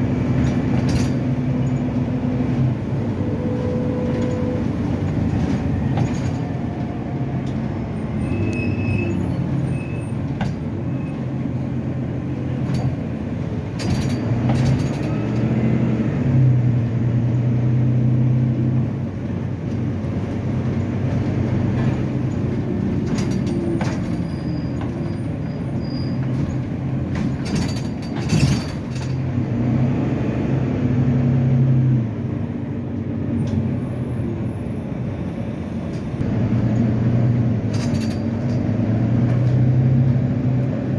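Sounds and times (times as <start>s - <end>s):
bus diesel engine running: 0.0s - 40.9s
sharp knocks and rattles: 9.4s - 15.7s, 19.3s - 29.4s, 37.6s - 40.8s.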